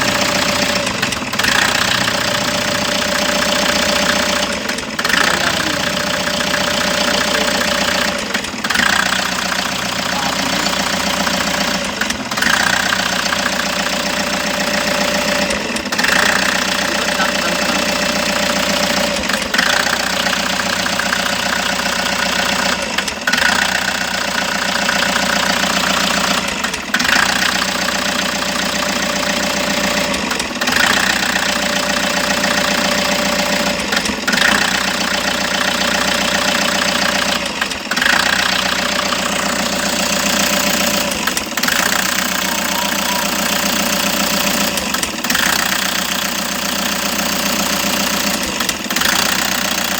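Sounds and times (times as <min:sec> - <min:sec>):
van engine idling with misfire: 0:00.0 - 0:49.9.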